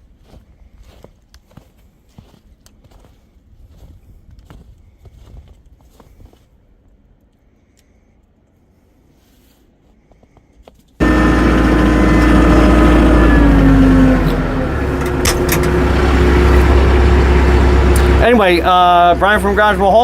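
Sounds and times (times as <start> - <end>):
tractor engine running: 11.0 - 20.0.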